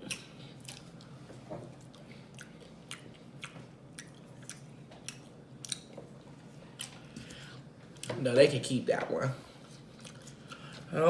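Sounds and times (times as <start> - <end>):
person chewing: 0.0 - 6.0, 6.6 - 8.1, 9.6 - 10.9.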